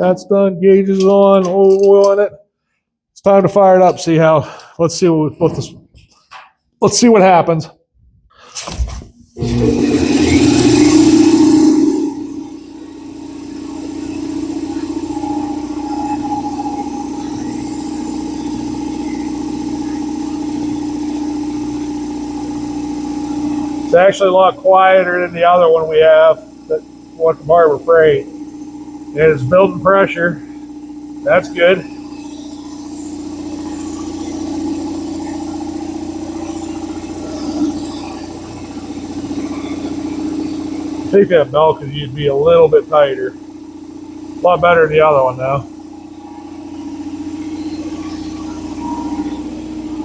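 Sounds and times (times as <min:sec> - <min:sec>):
air compressor running: 0:08.4 - 0:50.0.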